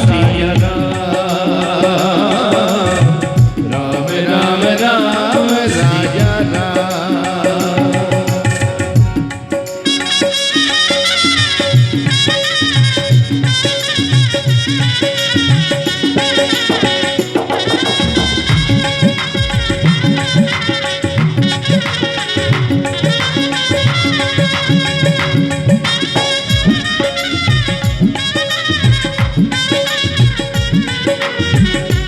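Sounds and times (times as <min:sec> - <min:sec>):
hand drum rhythm: 0:00.0 - 0:32.0
wavering lead melody: 0:00.0 - 0:32.0
held drone: 0:15.7 - 0:32.0.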